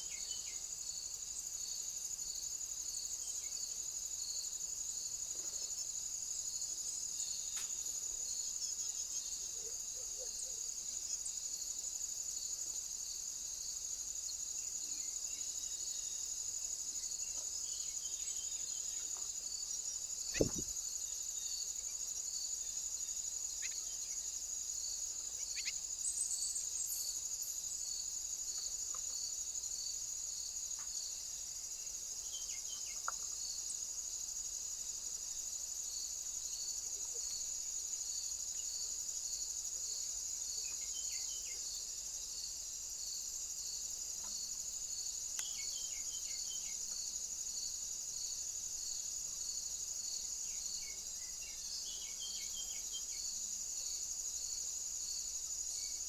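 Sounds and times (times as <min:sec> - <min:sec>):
crickets chirping: 0:00.0 - 0:56.0
bird calls: 0:20.3 - 0:20.7.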